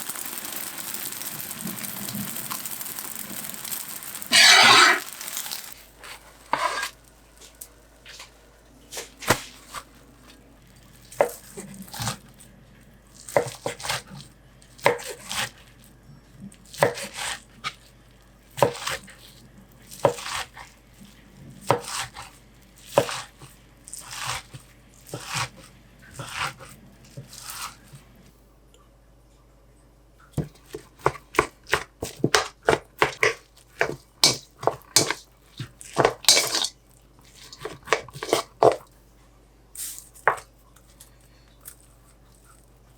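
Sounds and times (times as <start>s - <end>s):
knife chopping on cutting board: 13.3s - 14.0s, 14.8s - 15.5s, 16.8s - 17.4s, 18.6s - 19.0s, 20.0s - 20.6s, 21.7s - 22.3s, 22.9s - 23.4s, 24.0s - 28.0s, 30.4s - 36.7s, 37.5s - 38.8s.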